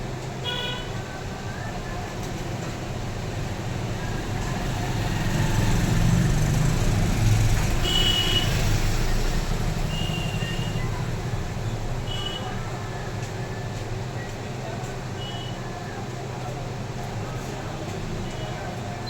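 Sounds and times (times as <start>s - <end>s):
vehicle passing on road: 4.2s - 7.8s.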